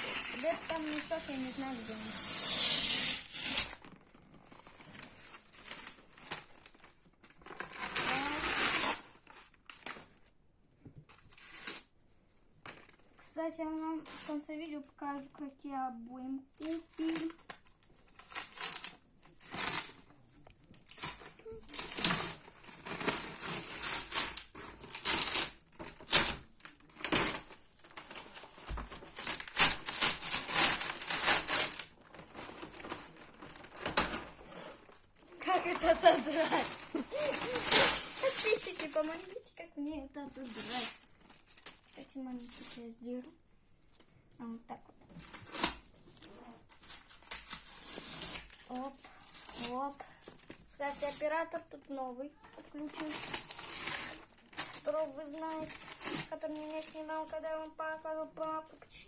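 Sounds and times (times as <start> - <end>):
wallpaper tearing: 0.0 - 3.9, 7.5 - 9.4, 20.9 - 39.4, 40.4 - 41.8, 45.2 - 49.8, 52.8 - 54.9, 55.5 - 57.0
paper crinkling: 0.0 - 10.4, 16.6 - 39.5, 45.1 - 57.8.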